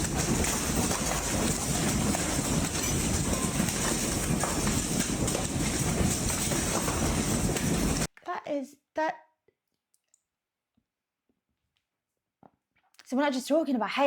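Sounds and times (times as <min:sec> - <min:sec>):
hailstones clattering: 0:00.0 - 0:08.1.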